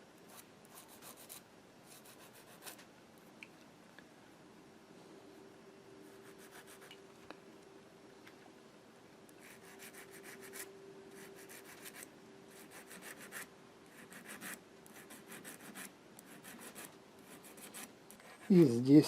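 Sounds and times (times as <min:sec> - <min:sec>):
needle file scraping metal: 0:09.4 - 0:18.7.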